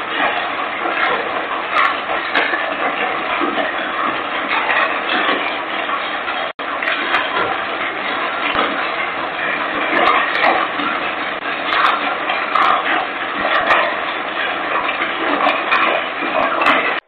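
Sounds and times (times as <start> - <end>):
fire crackling and popping: 0.0 - 17.0.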